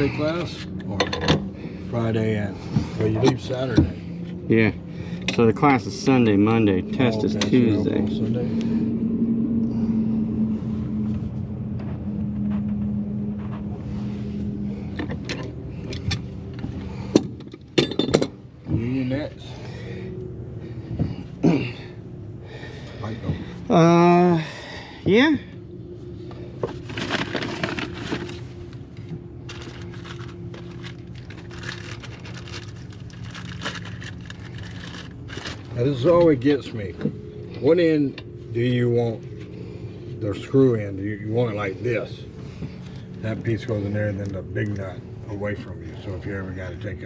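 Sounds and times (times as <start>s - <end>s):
low mechanical hum: 0.0s - 47.0s
metal pipe fittings clinking: 17.4s - 18.4s.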